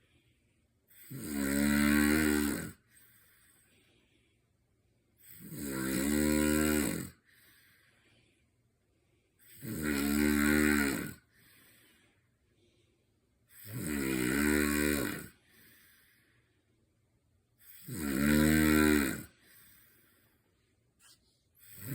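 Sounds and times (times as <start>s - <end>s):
faint breath: 0.0s - 1.2s, 2.8s - 5.5s, 7.2s - 9.6s, 11.2s - 13.6s, 15.3s - 17.9s, 19.3s - 21.9s
loud rasping snores: 0.9s - 3.6s, 5.2s - 7.7s, 9.4s - 11.8s, 13.5s - 16.1s, 17.6s - 20.1s, 21.6s - 21.9s.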